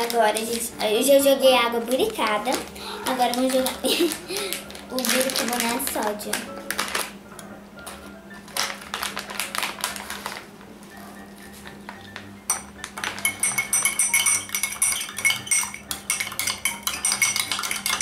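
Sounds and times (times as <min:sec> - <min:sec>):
metal spoon clinking in container: 0:12.5 - 0:18.0.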